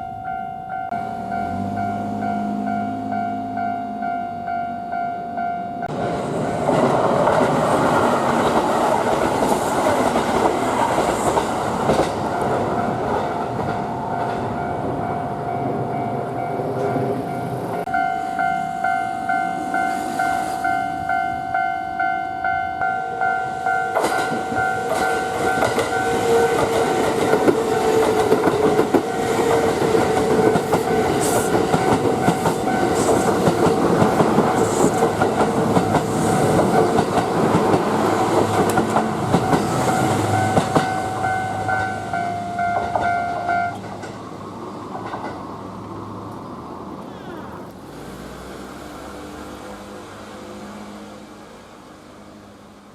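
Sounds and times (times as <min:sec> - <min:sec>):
level-crossing warning bell: 0:00.0 - 0:06.9, 0:11.9 - 0:38.0, 0:38.6 - 0:43.9
train wheels clattering: 0:23.9 - 0:44.3.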